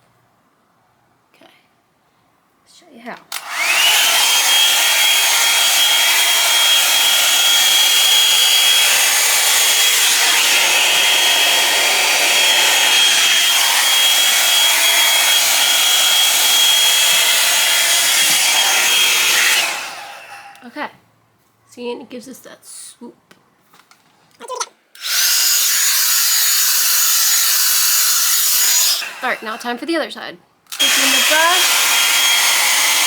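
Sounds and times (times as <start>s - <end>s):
blow-dryer brush running: 3.3s - 20.6s, 25.0s - 29.8s, 30.7s - 33.0s.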